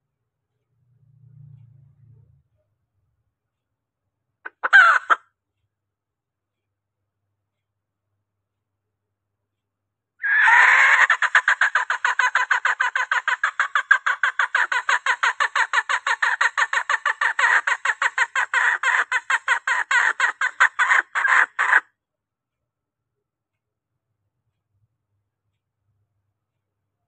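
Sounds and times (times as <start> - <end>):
hen clucking rapidly: 4.5 - 5.2, 10.2 - 21.8.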